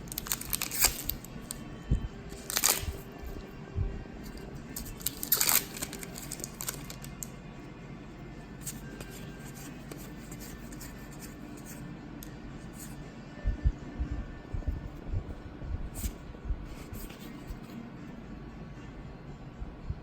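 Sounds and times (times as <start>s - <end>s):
foil wrapper crinkling and tearing: 0.1s - 1.6s, 2.4s - 3.0s, 4.8s - 7.3s.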